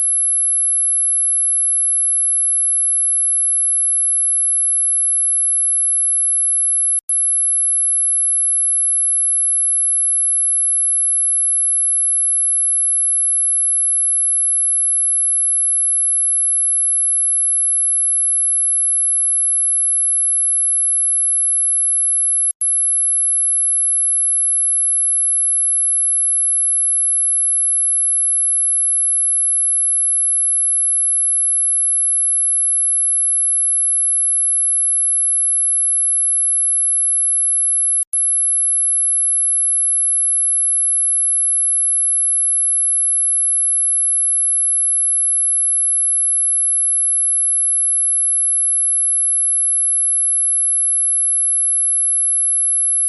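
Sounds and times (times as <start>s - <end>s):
click: 7.0s - 7.2s, 22.4s - 22.7s, 38.0s - 38.2s
high-pitched whistle tone: 18.1s - 20.2s.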